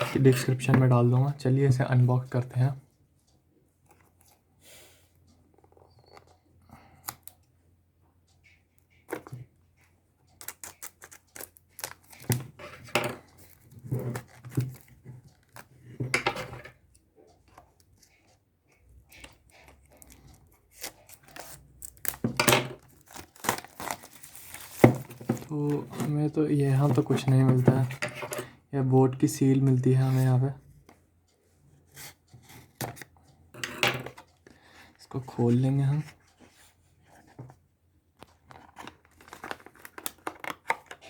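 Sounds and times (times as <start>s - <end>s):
packaging rustling and tearing: 22.8s - 25.9s, 38.6s - 41.0s.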